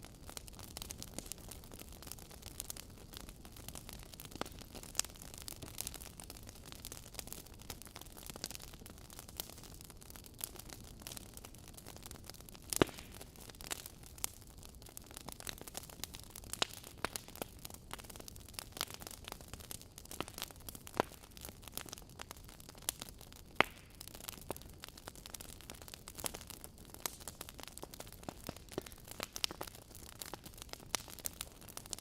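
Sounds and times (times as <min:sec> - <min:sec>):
wood fire crackling and popping: 0:00.0 - 0:32.0.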